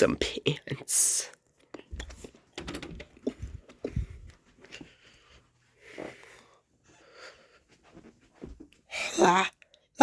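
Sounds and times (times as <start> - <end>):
soft wheezy breathing: 3.4 - 9.0.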